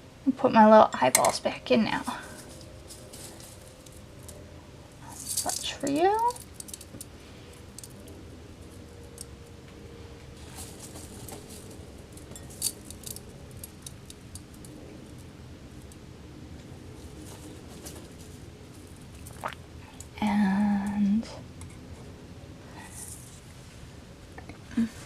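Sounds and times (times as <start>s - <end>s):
small objects clicking and tapping: 5.1s - 9.4s, 10.5s - 16.0s.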